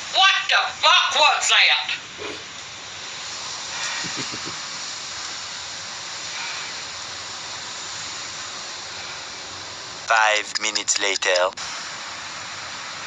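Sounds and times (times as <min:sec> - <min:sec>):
steady hiss: 0:00.0 - 0:13.0
faint low murmurs: 0:01.9 - 0:02.6.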